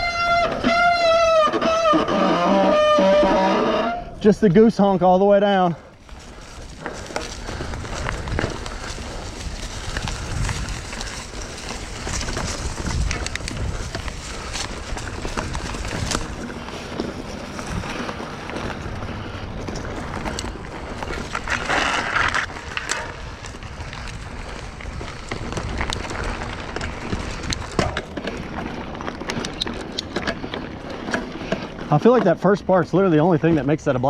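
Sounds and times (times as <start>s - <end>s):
bike clicks and rattles: 0.0s - 3.9s, 5.5s - 34.0s
bike tyre rumble: 0.0s - 34.0s
wind on microphone: 6.1s - 18.1s.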